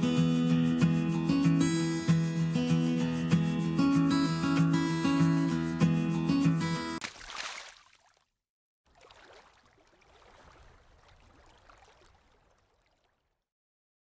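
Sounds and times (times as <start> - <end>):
strummed acoustic guitar music: 0.0 - 7.0
flowing river water: 7.0 - 8.2, 8.9 - 13.4.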